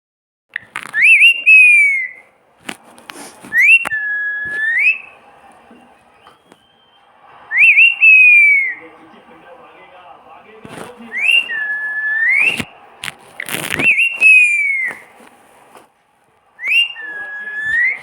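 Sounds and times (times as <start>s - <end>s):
parrot whistling: 0.6s - 2.4s, 3.4s - 9.0s, 11.0s - 15.3s, 16.5s - 18.0s.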